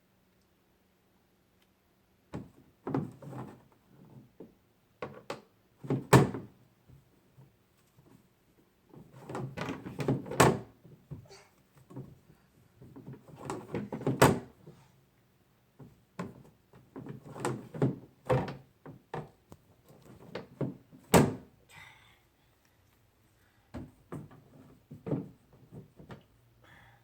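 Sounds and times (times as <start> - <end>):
small doors or drawers opening: 2.4 - 4.2, 9.0 - 10.7, 12.8 - 14.8, 15.8 - 19.3, 19.9 - 21.5.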